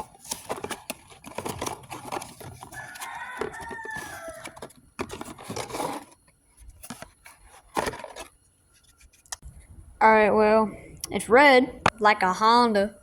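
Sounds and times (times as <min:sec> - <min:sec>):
packaging rustling and clicks: 0:00.0 - 0:09.3
rooster crowing: 0:02.6 - 0:04.8.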